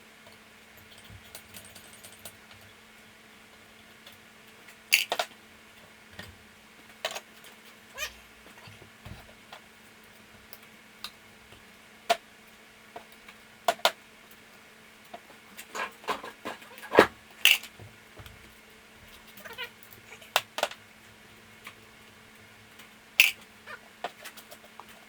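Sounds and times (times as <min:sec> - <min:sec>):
faint steady hum: 0:00.0 - 0:25.0
metal tools clinking: 0:00.8 - 0:02.4.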